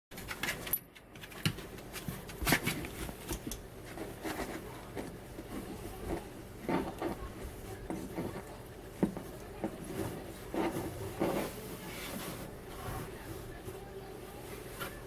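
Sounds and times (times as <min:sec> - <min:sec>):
puppy paws scrabbling in box: 0:00.2 - 0:15.0.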